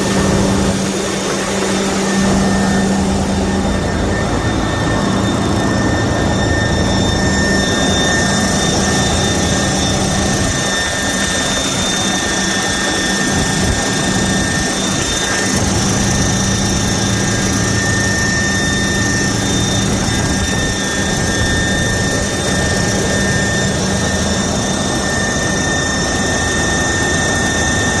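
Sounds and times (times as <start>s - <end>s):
diesel engine running: 0.0s - 10.8s.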